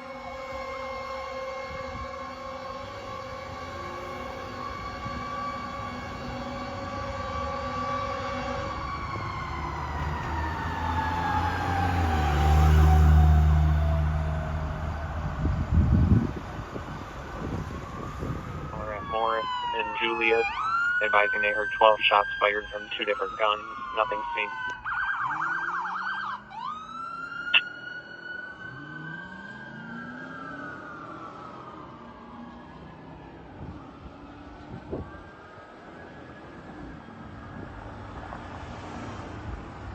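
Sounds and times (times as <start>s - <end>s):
fire engine siren: 0.0s - 39.9s
truck rumble passing: 3.5s - 18.8s.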